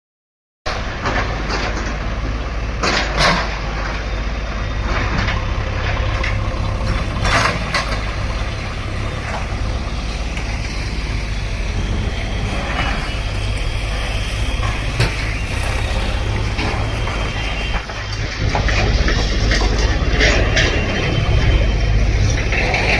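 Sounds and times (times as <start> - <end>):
bulldozer engine rumbling: 0.7 - 22.9
sharp knocks and clanks: 4.9 - 10.6.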